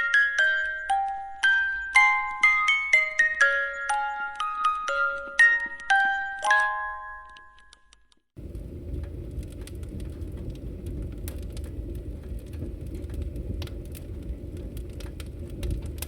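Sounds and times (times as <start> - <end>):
wood fire crackling: 8.4 - 16.0.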